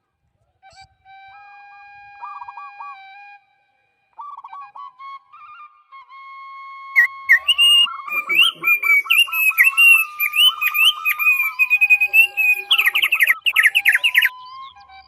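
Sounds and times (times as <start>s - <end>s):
songbirds singing: 7.0s - 15.0s.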